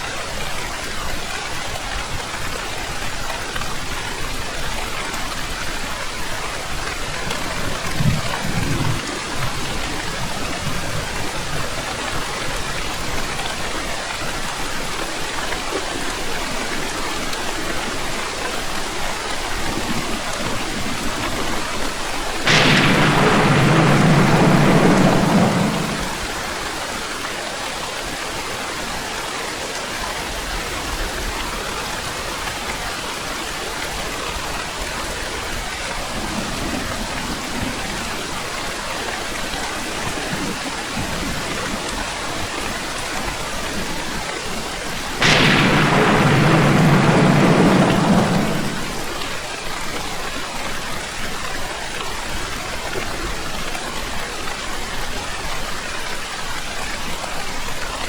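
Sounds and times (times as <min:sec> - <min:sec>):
heavy rain: 0:00.0 - 0:58.0
loud thunderclap rumbling: 0:07.2 - 0:11.3, 0:22.4 - 0:27.3, 0:45.0 - 0:49.5
low thunder roll: 0:07.2 - 0:11.3, 0:22.5 - 0:27.1, 0:45.2 - 0:49.5.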